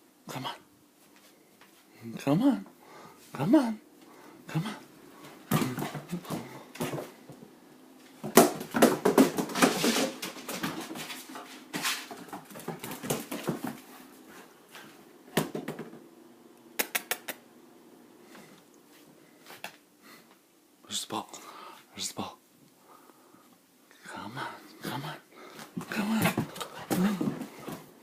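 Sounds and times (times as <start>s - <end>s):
dog playing with a ball: 5.2s - 7.4s, 8.2s - 14.1s, 25.7s - 27.9s.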